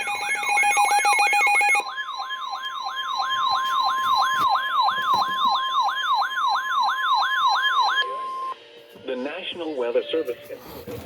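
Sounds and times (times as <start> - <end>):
electronic siren wailing: 0.0 - 8.6.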